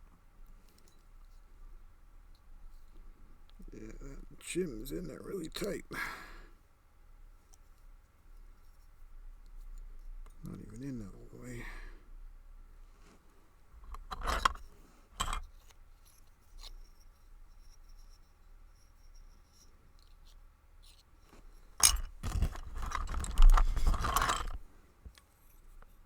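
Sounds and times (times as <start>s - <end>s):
metal scraping and rattling: 13.8s - 15.5s, 21.7s - 24.7s.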